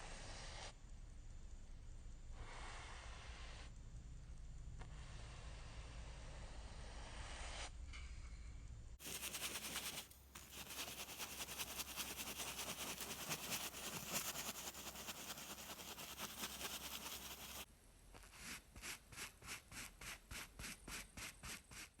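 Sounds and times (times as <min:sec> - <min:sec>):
paintbrush scratching on canvas: 0:09.0 - 0:17.7, 0:18.3 - 0:21.9.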